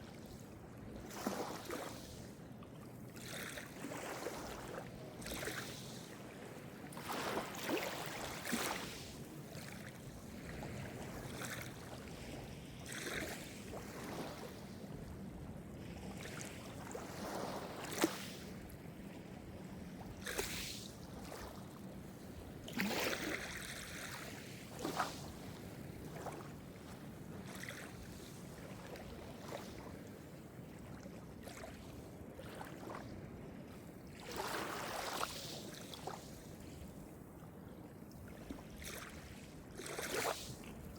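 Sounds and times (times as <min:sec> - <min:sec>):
small waves washing in: 0:03.2 - 0:14.7, 0:22.3 - 0:30.6, 0:34.1 - 0:36.8, 0:38.3 - 0:40.9.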